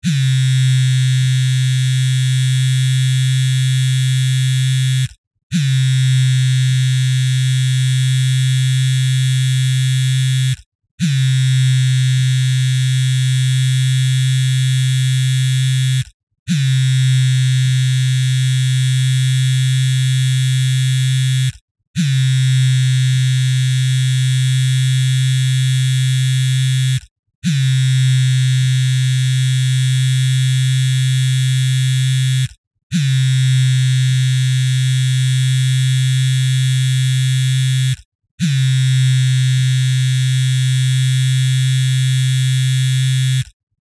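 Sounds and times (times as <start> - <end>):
mobile phone vibrating: 0.0 - 43.6.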